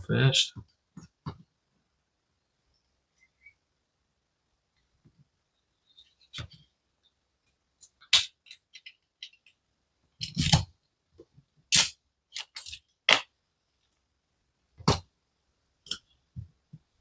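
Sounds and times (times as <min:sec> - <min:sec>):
clicks and knocks of small parts: 0:07.4 - 0:09.6, 0:11.7 - 0:13.3.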